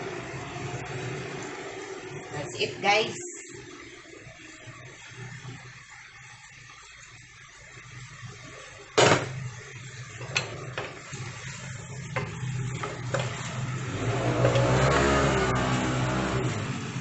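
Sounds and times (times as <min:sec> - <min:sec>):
food sizzling: 0:00.0 - 0:17.0
utensil clattering on pan: 0:10.2 - 0:11.0.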